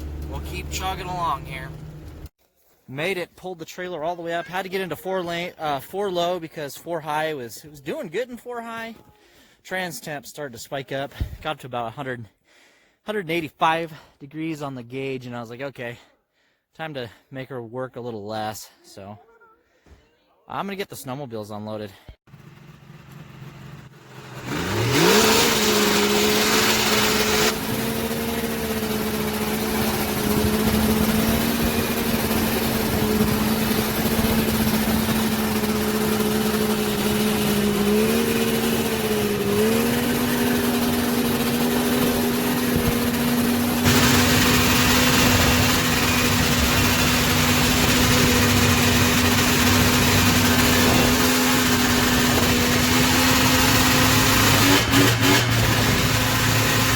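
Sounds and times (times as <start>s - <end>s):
snowmobile engine idling: 0.0s - 2.3s, 22.3s - 56.9s.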